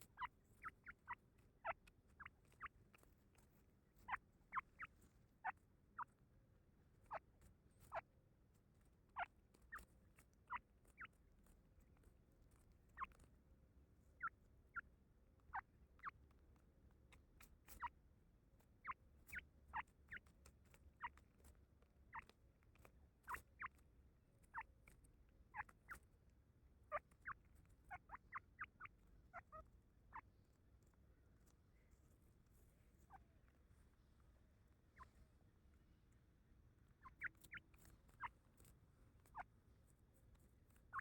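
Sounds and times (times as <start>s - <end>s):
bird high peeping calls: 37.0s - 37.6s.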